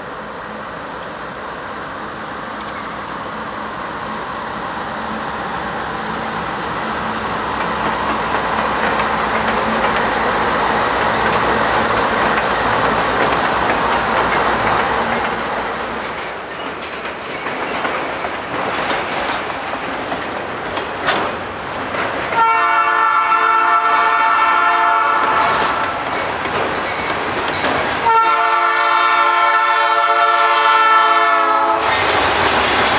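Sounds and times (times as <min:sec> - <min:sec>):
train rumbling past: 0:00.0 - 0:32.9
wheels clicking over rail joints: 0:07.5 - 0:22.5, 0:25.2 - 0:28.1
locomotive horn: 0:22.4 - 0:26.0, 0:28.0 - 0:31.9.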